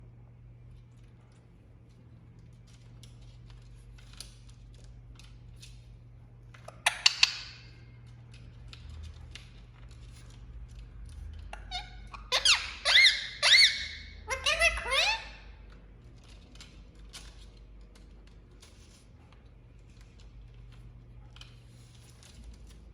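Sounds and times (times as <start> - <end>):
parakeet squawking: 11.5 - 15.6.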